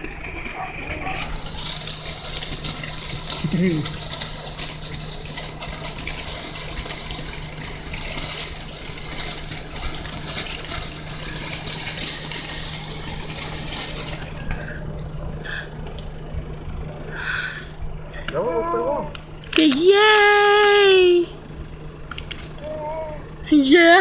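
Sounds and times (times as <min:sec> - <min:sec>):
fountain firework hissing: 0:00.0 - 0:18.3.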